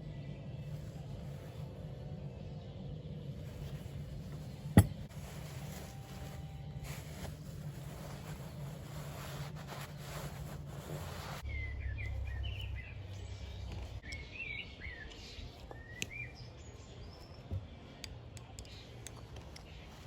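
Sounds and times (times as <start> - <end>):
low steady hum: 0.0 - 20.0
small birds chirping: 11.4 - 20.0.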